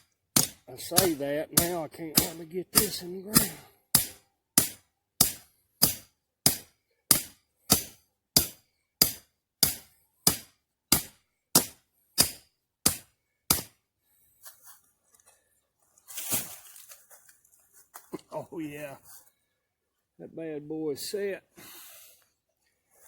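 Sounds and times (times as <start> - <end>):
hammer striking metal anchor: 0.3 - 13.8.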